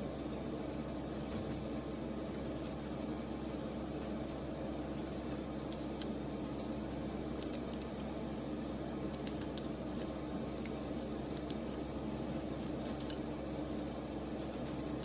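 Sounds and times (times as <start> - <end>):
metallic clicks of small parts: 5.7 - 6.2, 7.3 - 8.1, 9.1 - 11.8, 12.6 - 13.9.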